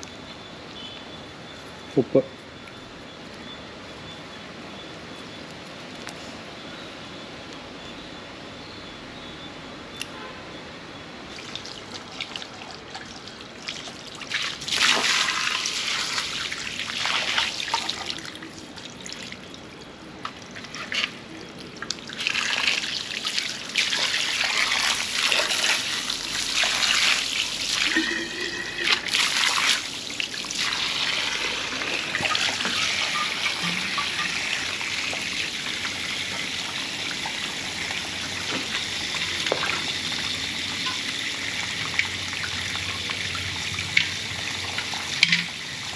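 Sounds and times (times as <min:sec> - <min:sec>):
water trickling and splashing: 0:11.3 - 0:45.9.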